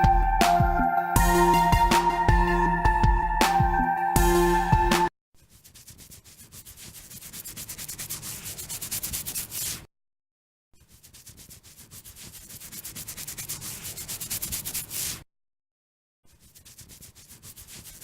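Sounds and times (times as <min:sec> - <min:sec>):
fingernails scratching hair: 0:05.5 - 0:09.8, 0:10.9 - 0:15.2, 0:16.4 - 0:18.0.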